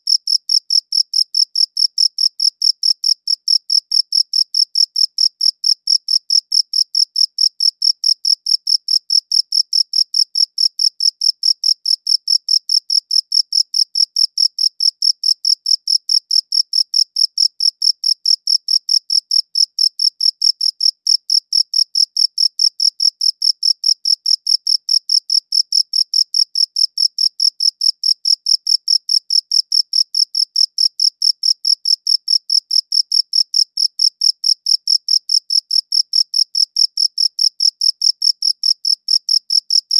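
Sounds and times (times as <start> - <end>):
cricket chirping: 0.1 - 39.9.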